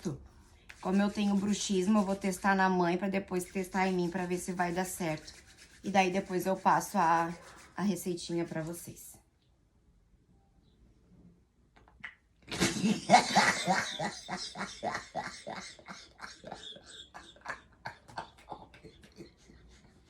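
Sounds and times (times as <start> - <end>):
woman laughing loudly: 12.5 - 20.0.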